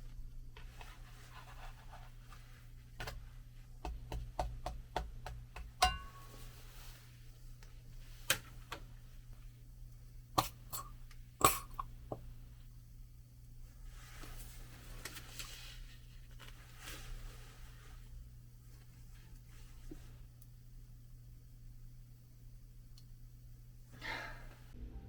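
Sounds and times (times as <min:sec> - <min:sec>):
steady low hum: 0:00.0 - 0:25.0
ringing clink: 0:05.8 - 0:06.3.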